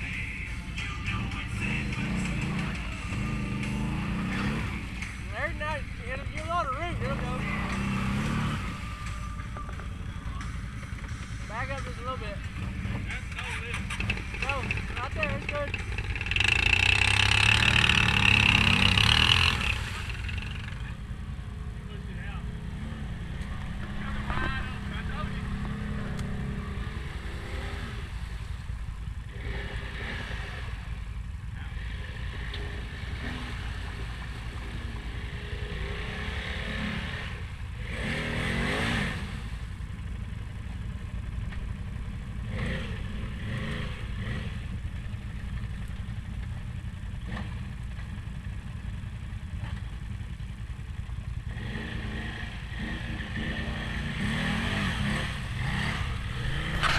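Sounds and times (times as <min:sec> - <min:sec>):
off-road vehicle engine revving: 0:00.0 - 0:56.9.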